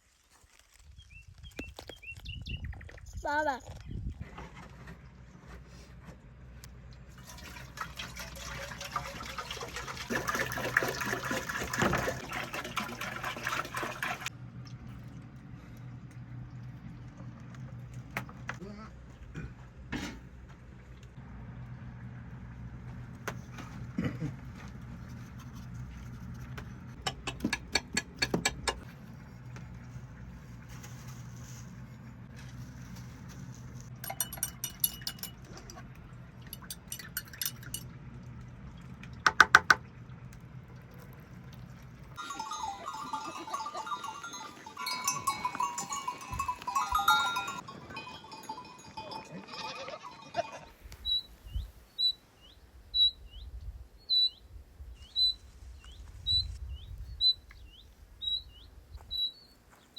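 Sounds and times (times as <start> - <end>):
small bird chirping: 0.9 - 4.1, 51.0 - 59.9
animal bells clinking: 33.9 - 38.0, 42.2 - 50.8.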